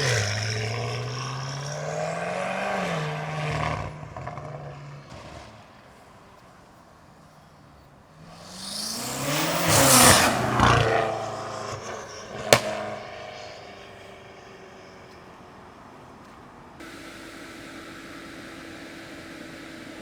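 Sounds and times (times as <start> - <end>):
car accelerating hard past: 0.0 - 5.9, 8.1 - 15.9
sharp exhaust pop: 12.3 - 13.2.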